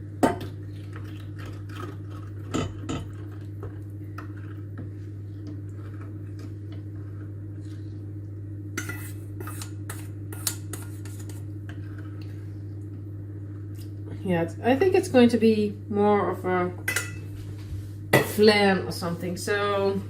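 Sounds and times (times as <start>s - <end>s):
steady low hum: 0.0s - 20.0s
utensil clinking against a bowl: 16.9s - 17.2s.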